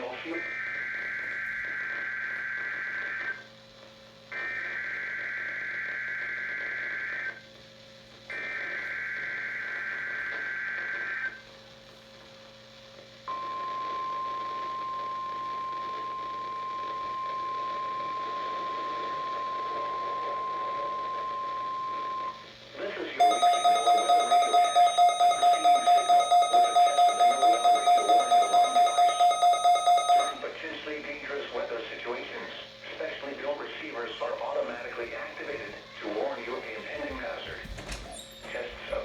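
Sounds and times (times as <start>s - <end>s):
steady warning alarm tone: 23.2s - 30.6s.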